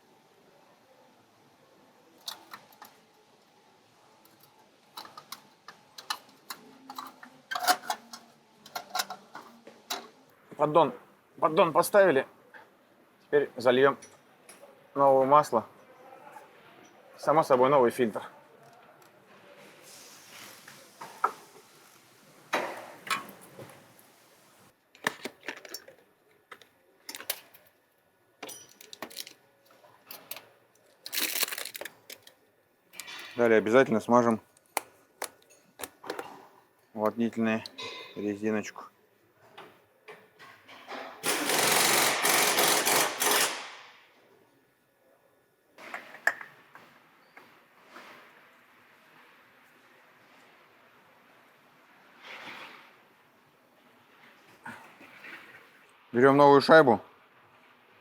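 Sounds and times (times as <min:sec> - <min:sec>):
hand tools clicking and clinking: 0:04.3 - 0:10.1, 0:28.4 - 0:29.4
small parts clicking and clinking: 0:28.4 - 0:32.4.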